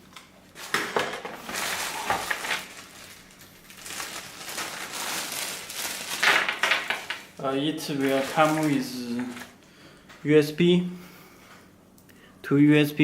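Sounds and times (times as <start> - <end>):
plastic packaging crinkling: 0.0 - 9.6.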